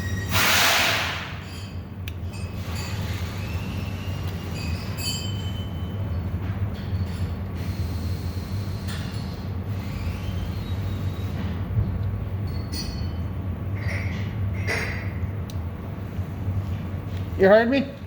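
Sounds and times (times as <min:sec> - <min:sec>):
low mechanical hum: 0:00.0 - 0:18.0
loud burst of hiss: 0:00.3 - 0:01.3.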